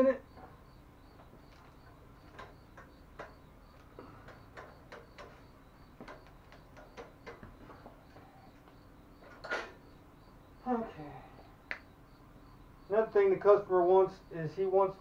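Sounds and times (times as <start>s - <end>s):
bicycle clicks and taps: 2.3s - 5.4s.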